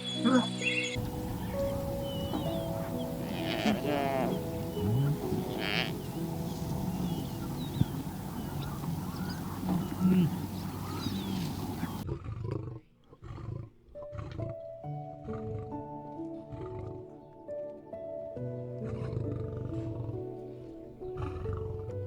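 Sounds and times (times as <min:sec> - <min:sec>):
background music: 0:00.0 - 0:12.0, 0:14.0 - 0:22.0
low animal calls: 0:00.0 - 0:12.0
small birds chirping: 0:00.0 - 0:12.0.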